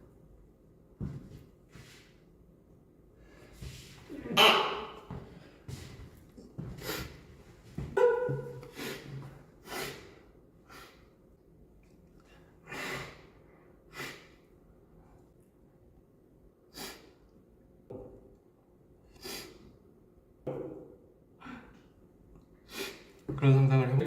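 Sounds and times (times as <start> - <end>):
man sniffling: 8.6 - 11.1, 12.6 - 14.4, 22.7 - 23.2.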